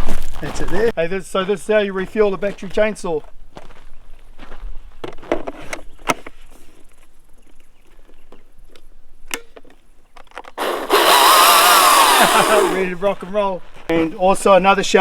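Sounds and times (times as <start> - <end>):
electric chainsaw running: 10.6 - 12.9.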